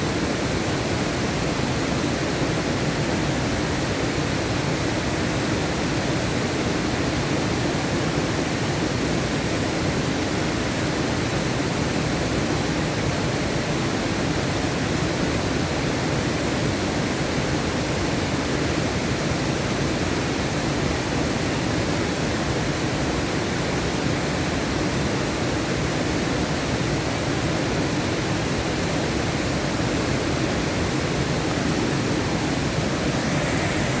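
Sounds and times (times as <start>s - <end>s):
waterfall rushing: 26.9s - 34.0s.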